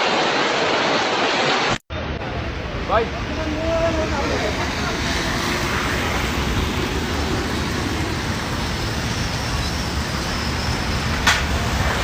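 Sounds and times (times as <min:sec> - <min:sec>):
road traffic rumble: 0:01.9 - 0:12.0.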